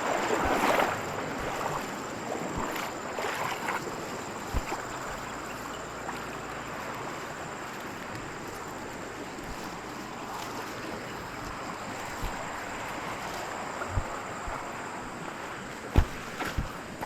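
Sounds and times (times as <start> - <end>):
brief thump: 15.9 - 16.9.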